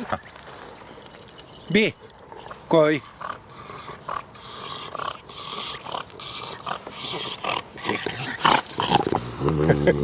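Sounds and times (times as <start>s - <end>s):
dog breathing noisily: 2.0s - 9.4s.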